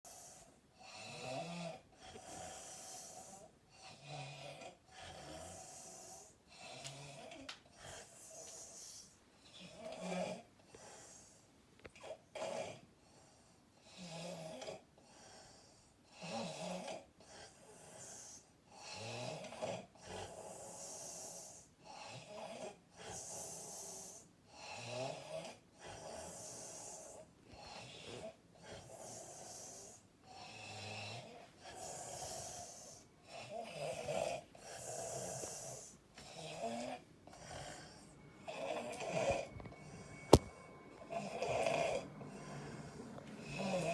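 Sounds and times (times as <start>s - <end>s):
person snoring loudly: 27.7s - 43.9s
hissing breath: 31.4s - 43.9s.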